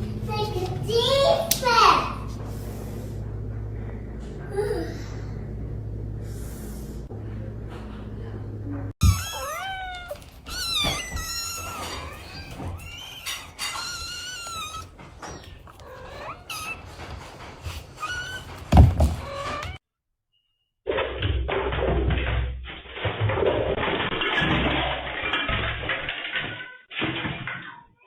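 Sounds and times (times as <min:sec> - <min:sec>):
cat meowing: 0:09.0 - 0:14.9, 0:15.7 - 0:17.0.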